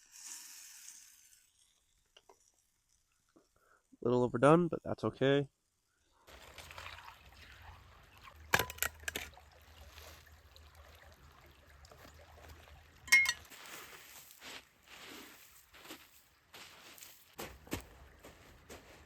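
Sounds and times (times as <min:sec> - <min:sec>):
faint trickling water: 0:05.9 - 0:16.6, 0:17.5 - 0:19.0
sharp metallic clinks: 0:13.1 - 0:13.6.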